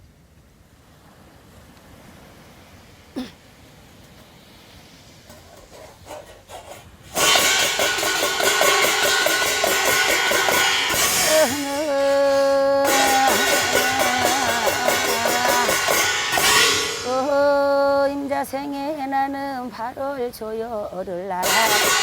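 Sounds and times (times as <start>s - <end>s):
loud music with drumming: 7.2s - 11.8s, 12.9s - 17.1s, 21.4s - 22.0s.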